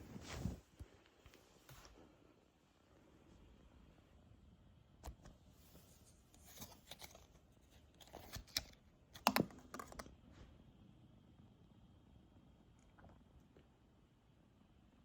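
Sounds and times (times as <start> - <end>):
packaging being opened by hand: 6.4 - 10.0.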